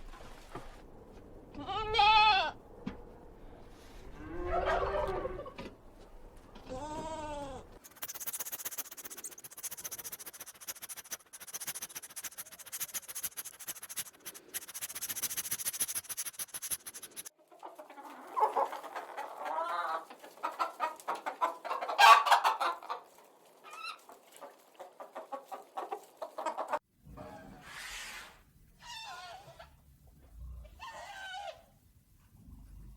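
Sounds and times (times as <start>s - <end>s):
chickens clucking: 4.5s - 5.7s, 7.8s - 26.8s.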